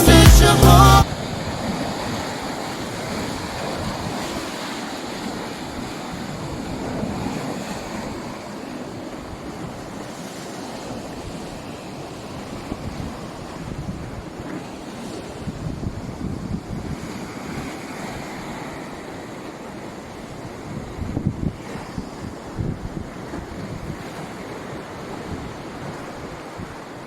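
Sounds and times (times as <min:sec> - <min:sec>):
music track: 0:00.0 - 0:01.0
wind: 0:01.0 - 0:27.0.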